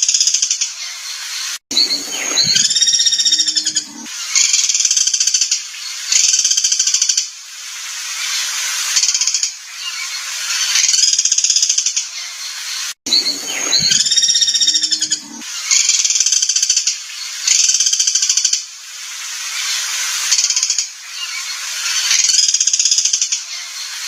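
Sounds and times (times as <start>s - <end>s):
songbird trilling: 1.7s - 4.1s, 13.1s - 15.4s.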